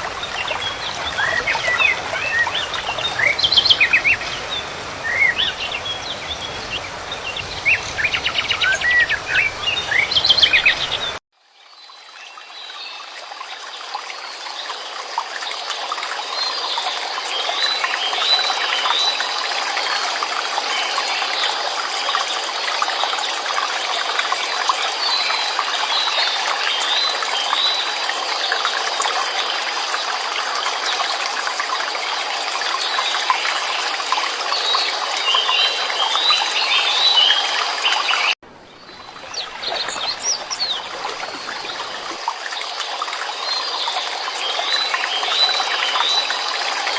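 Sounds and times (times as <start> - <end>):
running water babbling: 0.0 - 46.9
small birds chirping: 0.2 - 11.2, 38.7 - 42.2.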